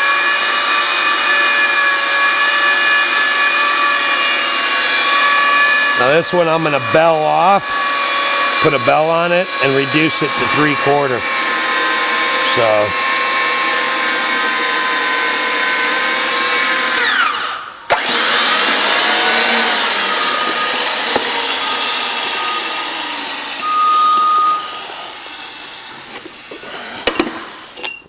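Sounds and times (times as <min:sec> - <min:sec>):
pipe threading machine whine: 0:00.0 - 0:28.0.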